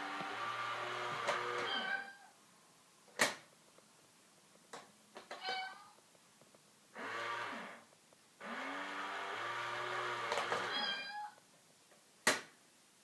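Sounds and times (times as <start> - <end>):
cat meowing: 1.6 - 2.3, 10.7 - 11.4.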